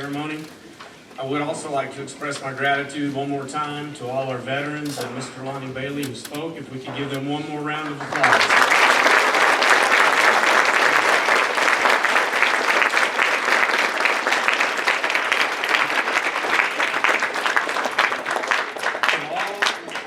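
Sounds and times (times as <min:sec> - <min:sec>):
audience applauding: 0:07.9 - 0:20.0.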